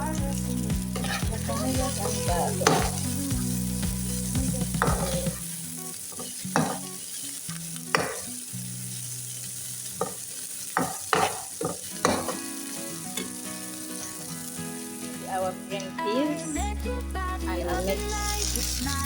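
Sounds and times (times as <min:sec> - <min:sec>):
vegetables sizzling in oil: 0:00.0 - 0:19.0
spoon scraping a pan: 0:00.5 - 0:03.2, 0:04.7 - 0:14.3.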